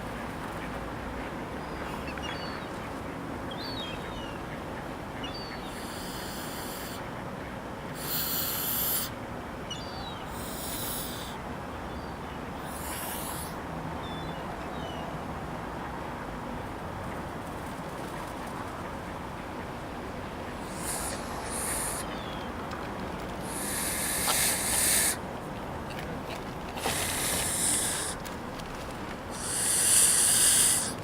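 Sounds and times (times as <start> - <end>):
faint bird calls: 5.2 - 7.1, 7.9 - 15.0, 20.5 - 22.6, 23.4 - 25.2, 26.8 - 28.3, 29.3 - 31.0
goose hissing: 5.7 - 7.0, 8.0 - 9.2, 10.3 - 11.4, 12.6 - 13.6, 20.6 - 22.3, 23.4 - 25.2, 26.8 - 28.2, 29.3 - 31.0.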